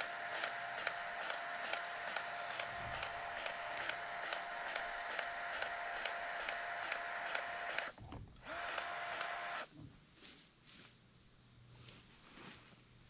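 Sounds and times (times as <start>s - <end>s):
grease gun whirring: 0.0s - 9.7s.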